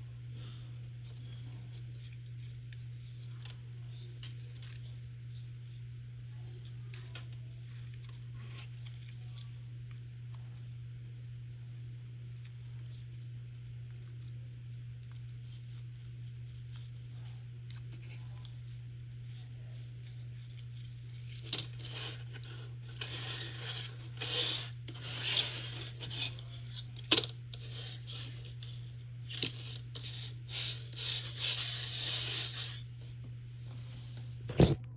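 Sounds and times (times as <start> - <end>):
steady low hum: 0.0 - 34.9
cardboard scraping and rustling: 34.5 - 34.9.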